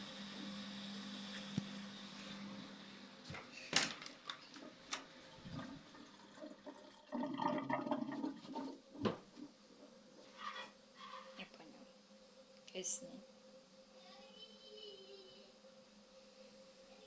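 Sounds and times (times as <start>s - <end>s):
drain pump humming: 0.0s - 10.2s
water gurgling: 4.4s - 9.8s.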